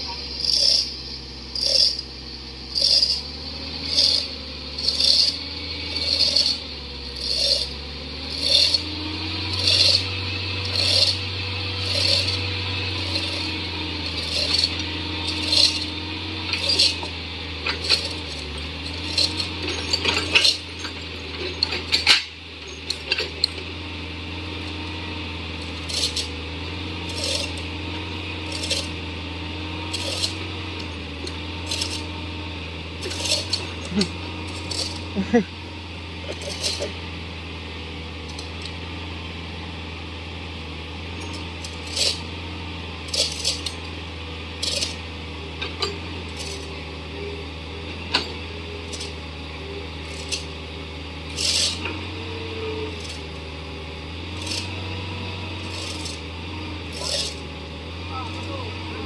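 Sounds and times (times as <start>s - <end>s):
diesel engine running: 0.0s - 59.0s
sharp metallic clinks: 0.1s - 2.1s, 2.7s - 6.6s, 11.8s - 23.6s, 33.0s - 35.5s.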